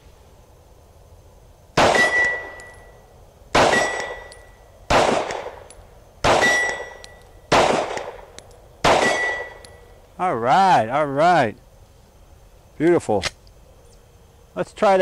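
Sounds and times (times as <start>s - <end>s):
pistol shots: 1.8s - 2.8s, 3.5s - 9.7s
steel target ringing ping: 1.9s - 3.0s, 3.7s - 4.6s, 6.4s - 7.3s, 9.0s - 9.9s.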